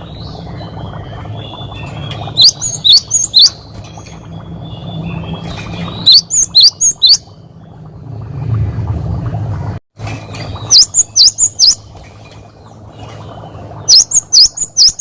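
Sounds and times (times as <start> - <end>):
steady low hum: 0.0 - 15.0
faint bird twittering: 10.3 - 15.0.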